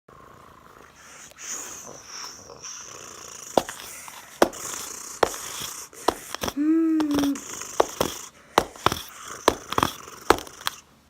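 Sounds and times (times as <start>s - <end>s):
person blowing like a horse: 3.6s - 10.7s
mouth clicks: 3.6s - 10.8s.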